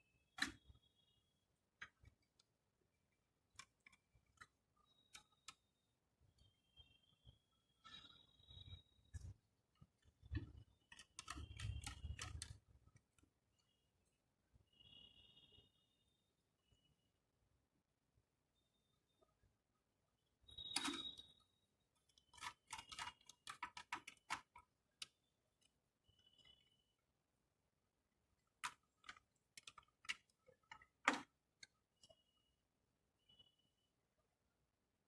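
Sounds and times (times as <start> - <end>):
faint high beeps: 14.7 - 17.1, 26.0 - 27.0, 32.0 - 34.1.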